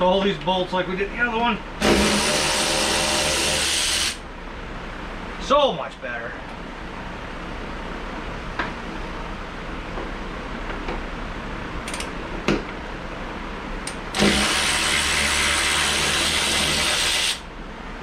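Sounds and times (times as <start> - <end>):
power tool running: 1.8 - 4.2, 14.1 - 17.4.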